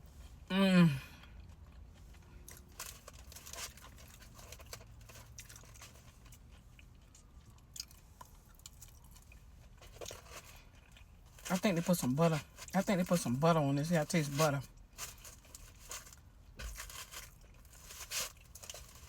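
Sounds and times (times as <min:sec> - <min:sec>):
person chewing: 0:01.0 - 0:11.5.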